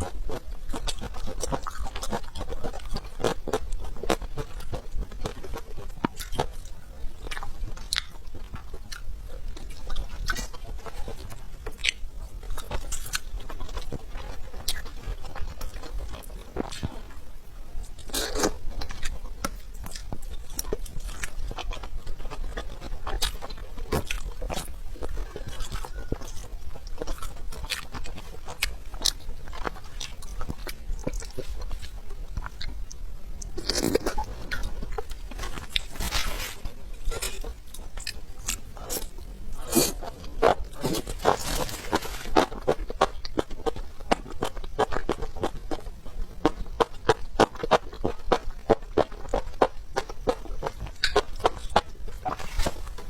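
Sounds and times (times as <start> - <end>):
crunchy bites and chewing: 0.0 - 53.0.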